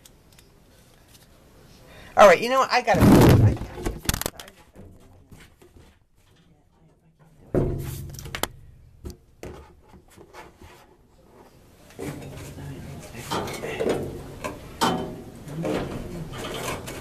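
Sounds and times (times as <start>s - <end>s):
rubbing and scraping: 2.9s - 6.0s, 9.4s - 13.6s, 16.0s - 17.0s.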